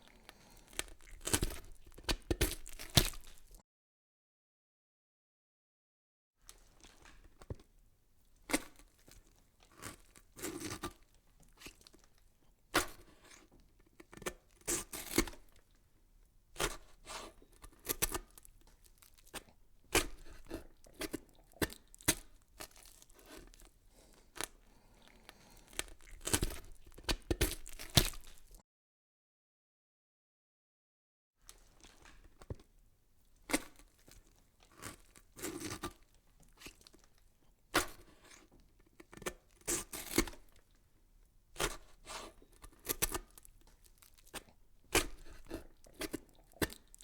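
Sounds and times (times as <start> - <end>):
crackling and tearing: 0.0 - 3.6, 16.6 - 28.6, 33.4 - 40.8, 41.6 - 47.0.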